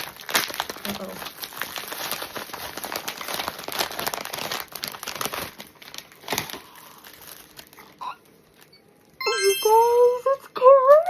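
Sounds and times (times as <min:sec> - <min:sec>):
wrapper crinkling and tearing: 0:00.0 - 0:08.7.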